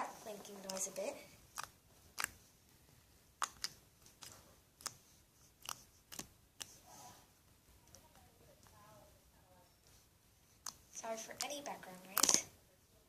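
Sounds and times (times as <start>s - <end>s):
air pockets popping in slime: 3.4s - 5.0s.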